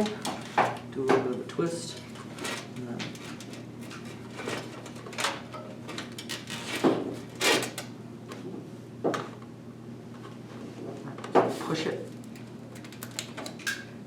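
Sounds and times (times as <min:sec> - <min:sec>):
cable rustling and scraping: 0:01.9 - 0:07.9.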